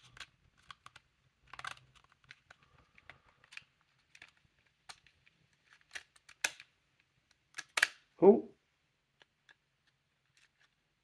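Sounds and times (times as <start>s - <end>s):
wooden puzzle pieces clicking: 0.0s - 6.7s.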